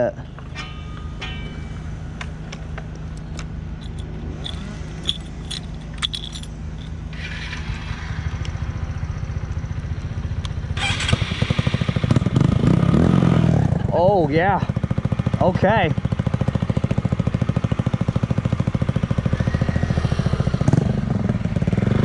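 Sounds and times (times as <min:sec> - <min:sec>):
light metallic clicks and jangles: 0:03.2 - 0:07.0.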